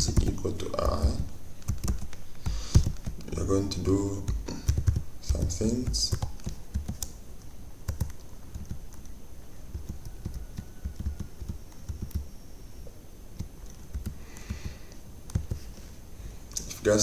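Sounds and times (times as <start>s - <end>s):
typing on computer keyboard: 0.0s - 3.4s, 4.1s - 9.1s, 9.7s - 12.3s, 13.4s - 15.7s.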